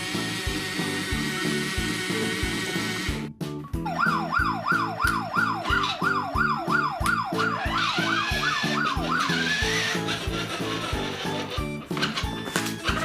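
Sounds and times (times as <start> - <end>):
background music with steady beat: 0.0 - 13.0
fast yelping siren: 3.9 - 9.9.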